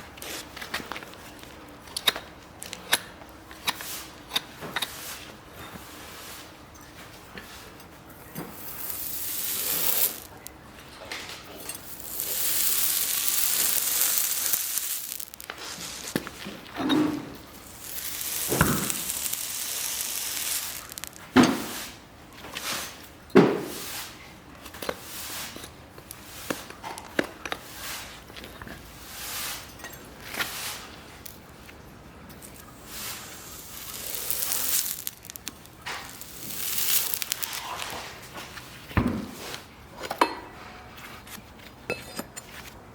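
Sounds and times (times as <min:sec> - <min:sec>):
hissing scrapes on hoof: 0:07.5 - 0:10.5, 0:11.6 - 0:22.0, 0:25.0 - 0:26.6, 0:29.0 - 0:29.7, 0:30.4 - 0:31.0, 0:32.8 - 0:38.2.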